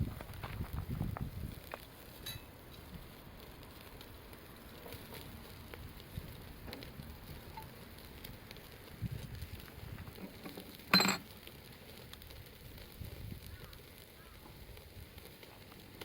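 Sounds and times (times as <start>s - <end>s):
campfire crackling: 0.0s - 16.0s
cookware clinking: 10.9s - 11.2s.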